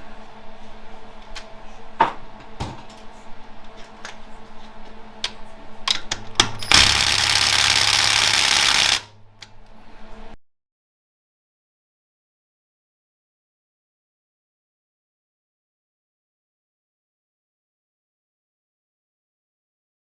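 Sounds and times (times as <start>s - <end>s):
pneumatic air tool running: 6.6s - 9.1s.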